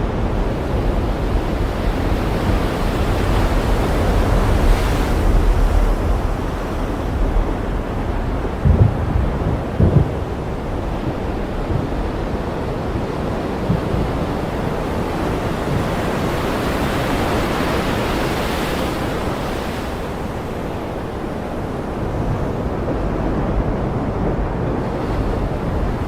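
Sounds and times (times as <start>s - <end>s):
continuous low rumble: 0.0s - 15.9s
waves washing ashore: 0.0s - 26.0s.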